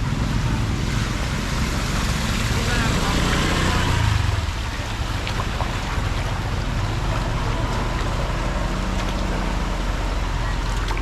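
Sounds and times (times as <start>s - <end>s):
rushing water: 0.0s - 11.0s
vehicle engine rumble: 0.0s - 11.0s.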